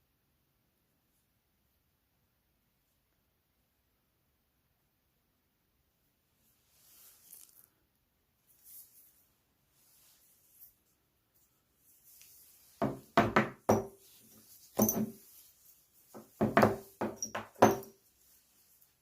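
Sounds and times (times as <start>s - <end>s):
hard objects knocking and clacking: 12.8s - 14.0s, 14.8s - 15.2s, 16.2s - 17.9s.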